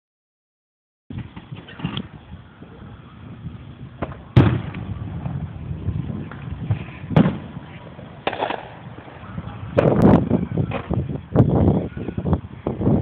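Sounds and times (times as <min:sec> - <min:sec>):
fireworks bangs: 0:04.0 - 0:09.1.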